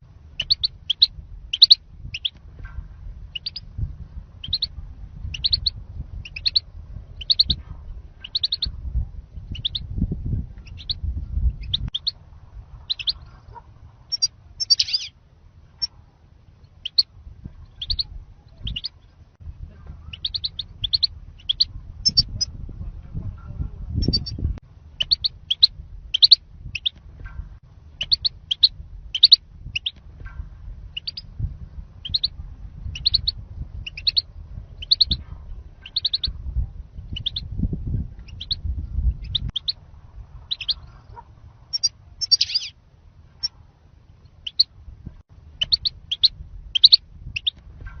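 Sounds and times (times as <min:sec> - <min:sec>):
low background rumble: 0:00.0 - 0:48.0
goldfinch chirping: 0:00.4 - 0:02.3, 0:03.3 - 0:03.6, 0:04.4 - 0:04.7, 0:05.3 - 0:06.6, 0:07.2 - 0:07.6, 0:08.2 - 0:08.7, 0:09.5 - 0:09.8, 0:10.6 - 0:11.0, 0:12.9 - 0:13.3, 0:14.1 - 0:15.1, 0:17.7 - 0:19.1, 0:20.1 - 0:22.4, 0:24.0 - 0:24.4, 0:25.0 - 0:27.0, 0:28.0 - 0:30.0, 0:31.0 - 0:31.3, 0:32.0 - 0:32.3, 0:32.9 - 0:34.2, 0:34.8 - 0:35.2, 0:35.8 - 0:36.3, 0:38.2 - 0:39.8, 0:40.5 - 0:40.9, 0:41.7 - 0:42.7, 0:44.4 - 0:44.7, 0:45.6 - 0:47.6.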